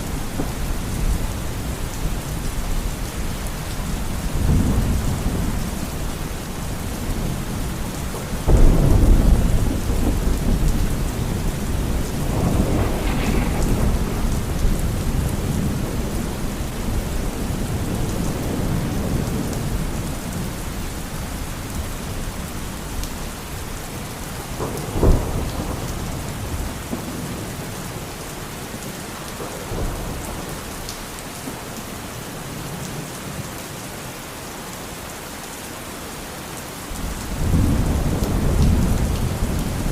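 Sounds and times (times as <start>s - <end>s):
thunder rumbling: 0.0s - 20.8s, 21.7s - 28.0s, 37.0s - 39.9s
steady rain: 0.0s - 39.9s.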